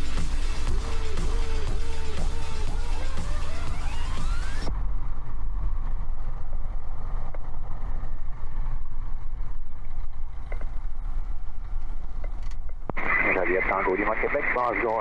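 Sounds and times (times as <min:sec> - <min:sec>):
background music: 0:00.0 - 0:04.7
plane piston engine rumbling: 0:00.0 - 0:04.7.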